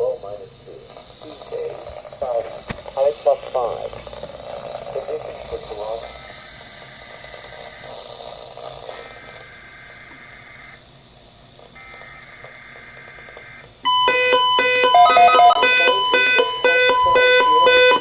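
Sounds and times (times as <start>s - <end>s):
radio hiss: 0.0s - 13.8s
faint steady tones: 0.0s - 18.0s
electronic alert tones: 13.9s - 18.0s.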